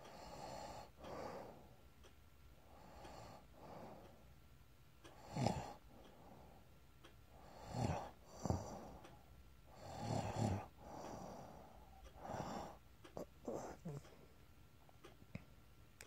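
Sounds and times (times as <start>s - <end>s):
snoring with rattling buzz: 5.1s - 5.8s, 7.4s - 9.0s, 9.7s - 11.3s.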